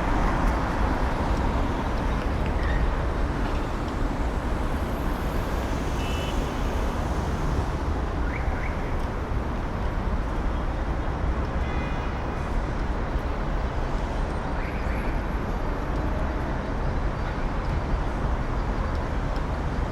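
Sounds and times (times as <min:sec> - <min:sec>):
road traffic rumble: 0:00.0 - 0:19.9.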